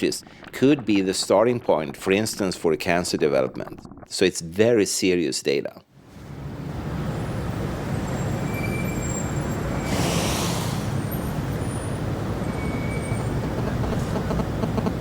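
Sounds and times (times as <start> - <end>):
road traffic rumble: 6.1 - 15.0
brief hiss: 9.8 - 11.2.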